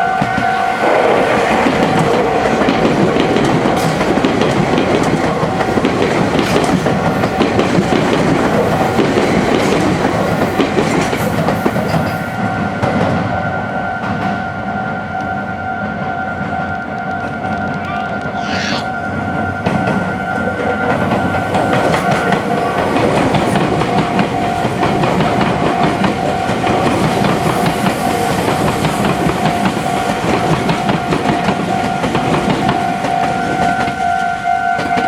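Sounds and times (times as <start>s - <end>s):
train wheels clattering over joints: 1.4s - 12.4s.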